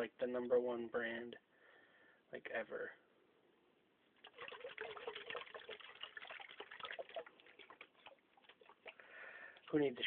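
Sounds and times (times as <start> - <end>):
liquid sloshing in shaken can: 4.2 - 9.8.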